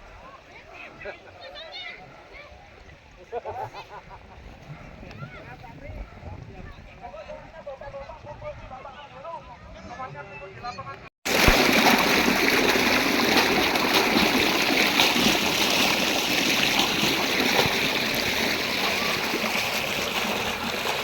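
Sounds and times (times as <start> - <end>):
stream water rushing: 11.3 - 21.0.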